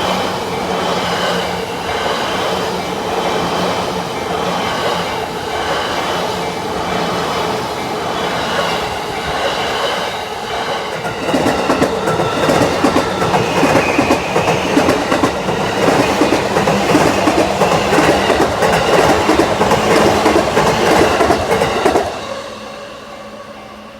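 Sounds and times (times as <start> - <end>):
train wheels clattering over joints: 10.8 - 22.2.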